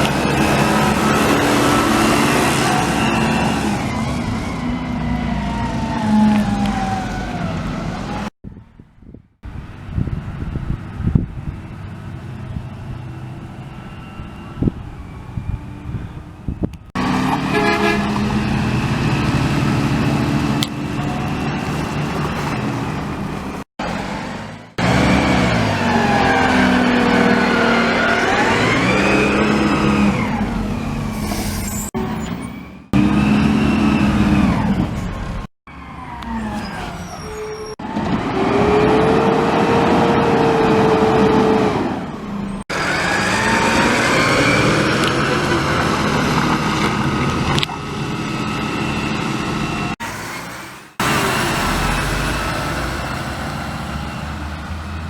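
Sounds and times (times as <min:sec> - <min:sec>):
garbage truck squealing: 0:00.0 - 0:08.3, 0:13.0 - 0:55.0
truck engine running: 0:09.4 - 0:31.3, 0:41.3 - 0:55.0.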